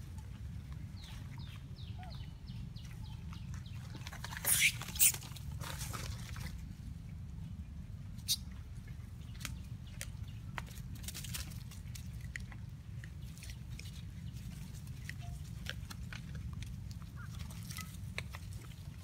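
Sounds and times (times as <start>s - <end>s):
low steady rumble: 0.0s - 19.0s
high falling animal squeaks: 4.4s - 5.2s.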